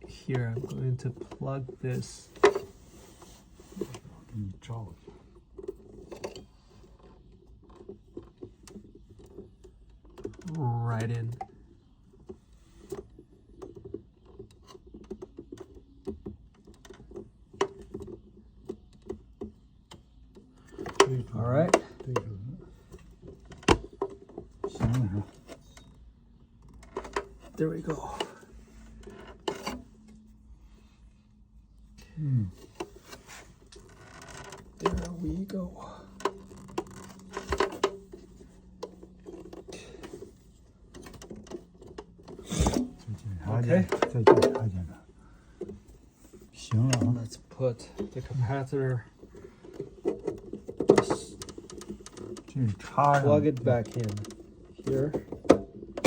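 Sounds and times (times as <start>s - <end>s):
light plastic and metal clicks: 32.6s - 47.2s, 49.2s - 56.0s.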